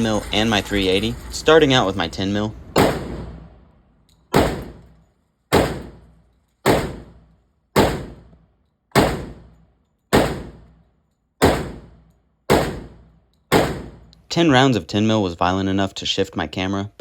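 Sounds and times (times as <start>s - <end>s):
pistol shots with echo: 2.8s - 3.4s, 4.3s - 4.9s, 5.5s - 6.1s, 6.7s - 7.2s, 9.0s - 10.7s.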